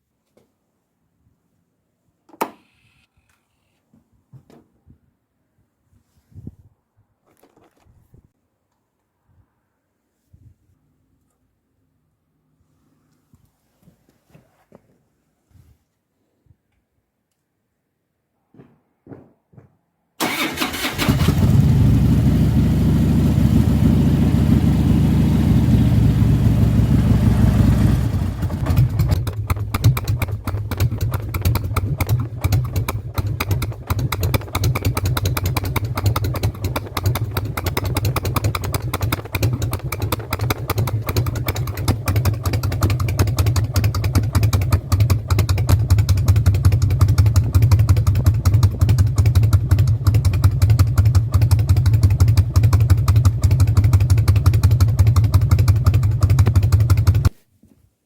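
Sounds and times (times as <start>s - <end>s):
motorcycle engine idling: 20.2s - 57.3s.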